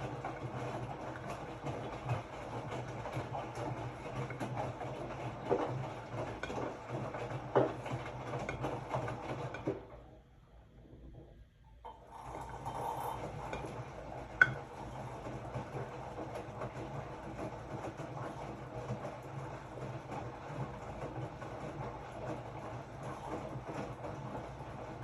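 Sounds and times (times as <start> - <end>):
washing machine drum rumbling: 0.0 - 25.0.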